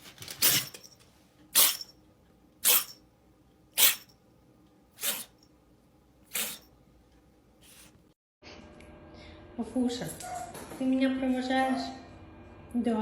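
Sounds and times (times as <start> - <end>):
cat sneezing: 5.0 - 5.3, 6.3 - 6.6.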